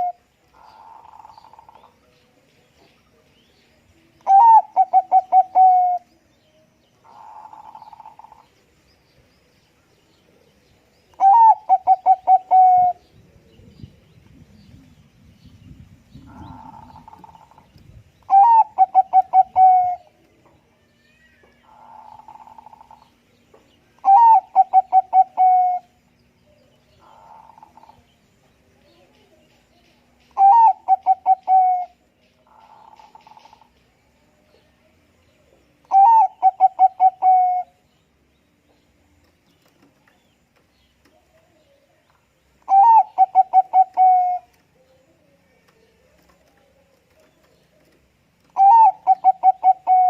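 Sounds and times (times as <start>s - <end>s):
dove cooing: 4.3s - 6.1s, 11.2s - 13.0s, 18.3s - 20.2s, 24.0s - 26.0s, 30.4s - 33.7s, 35.9s - 37.8s, 42.7s - 44.6s, 46.0s - 50.0s.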